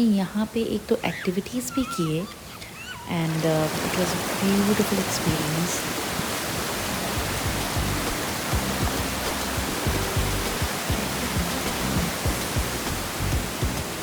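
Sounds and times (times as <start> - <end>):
waterfall rushing water: 1.6 - 14.0
short low thumps: 7.1 - 14.0.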